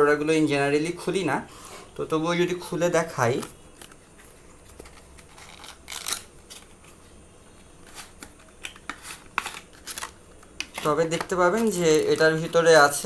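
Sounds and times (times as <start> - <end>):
packaging rustling and clicking: 3.3 - 7.0, 7.6 - 13.0.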